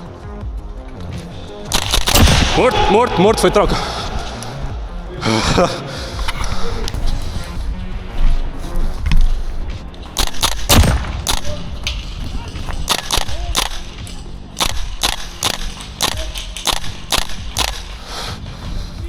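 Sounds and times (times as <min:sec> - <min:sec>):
airsoft guns firing: 0:01.5 - 0:04.8, 0:10.0 - 0:18.3.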